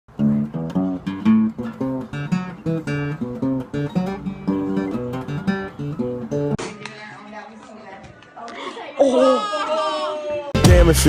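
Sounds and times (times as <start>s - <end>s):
fingerpicked acoustic guitar: 0.1s - 6.6s.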